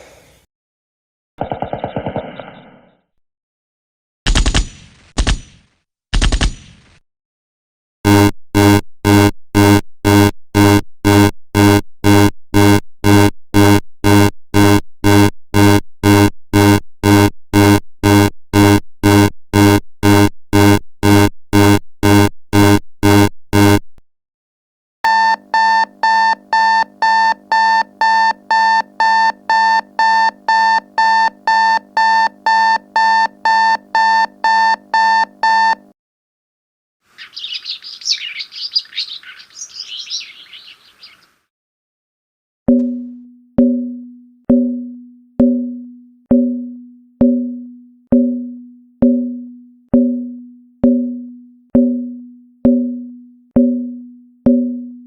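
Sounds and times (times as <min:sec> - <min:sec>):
buzzy electronic beep: 0:08.1 - 0:24.0
low pulsing tone: 0:08.1 - 0:24.0, 0:42.7 - 0:55.0
bird chirps: 0:37.2 - 0:41.4.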